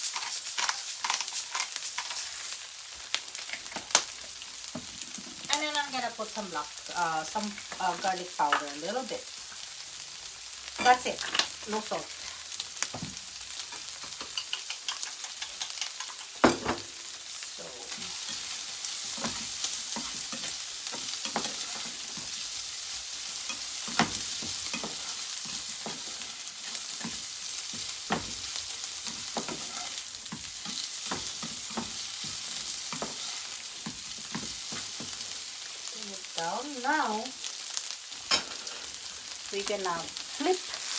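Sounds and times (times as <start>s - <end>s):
spatula scraping a pan: 0.0s - 6.0s, 10.2s - 16.4s, 17.0s - 36.0s, 38.1s - 39.4s
food sizzling in a frying pan: 0.0s - 40.9s.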